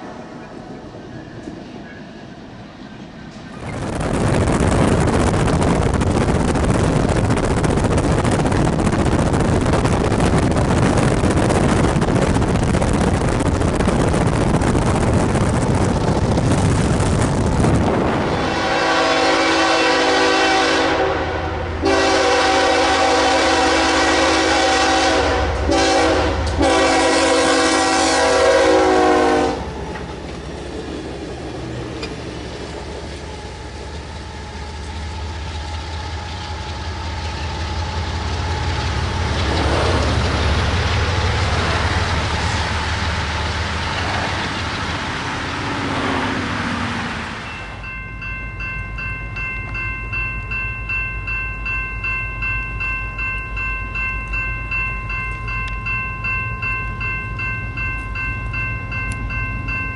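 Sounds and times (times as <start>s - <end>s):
train rumbling past: 0.0s - 59.9s
locomotive air horn blasts: 18.2s - 29.7s.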